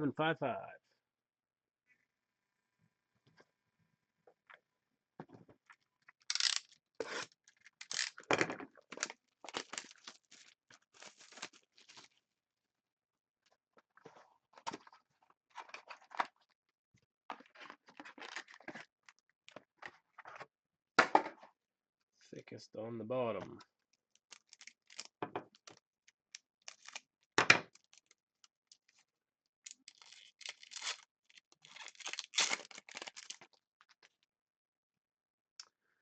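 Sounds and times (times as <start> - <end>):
packaging crinkling: 6.2 - 8.3, 8.9 - 12.2, 26.7 - 27.0, 29.7 - 33.6
packaging tearing: 6.2 - 8.3, 8.9 - 12.2, 26.7 - 27.0, 29.7 - 33.6.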